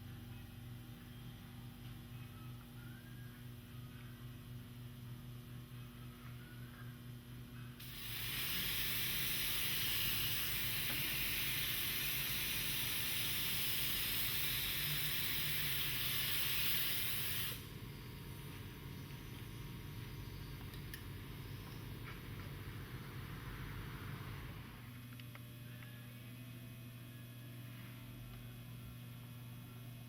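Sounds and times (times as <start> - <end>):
adhesive spray hiss: 7.8 - 17.6.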